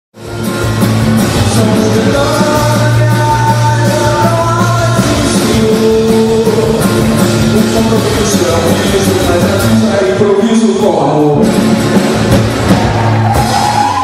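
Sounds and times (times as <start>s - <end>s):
rock music: 0.1s - 14.0s.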